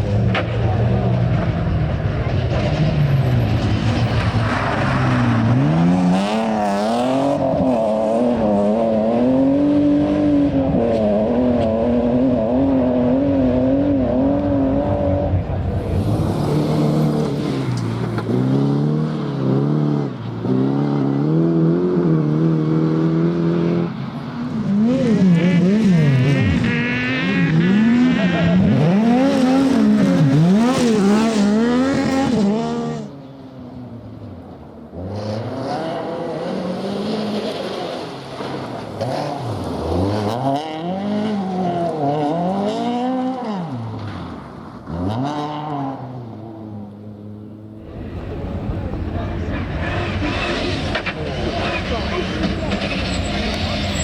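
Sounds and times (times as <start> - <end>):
rally car engines revving: 0.0 - 54.0
tyre squeal: 49.5 - 54.0.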